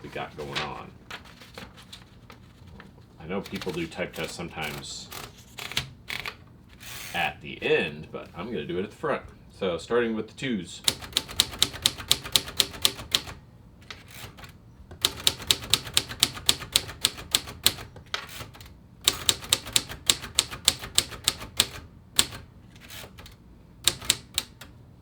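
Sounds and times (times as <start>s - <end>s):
manual typewriter typing: 0.0s - 1.9s, 3.2s - 7.3s, 10.8s - 24.8s.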